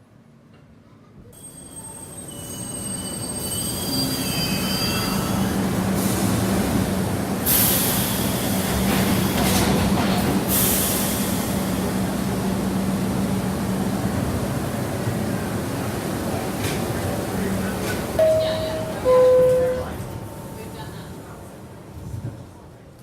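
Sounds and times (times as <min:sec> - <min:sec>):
subway train running: 0:00.1 - 0:23.0
high wavering wheel squeal: 0:01.7 - 0:05.6.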